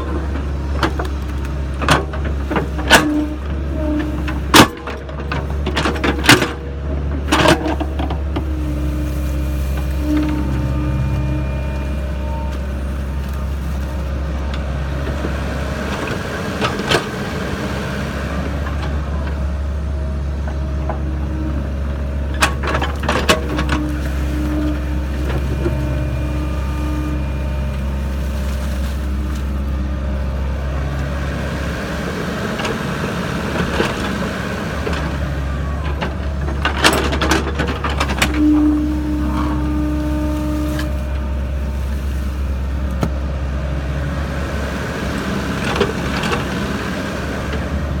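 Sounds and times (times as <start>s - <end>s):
excavator diesel engine running: 0.0s - 48.0s
short steady whine: 8.5s - 13.6s.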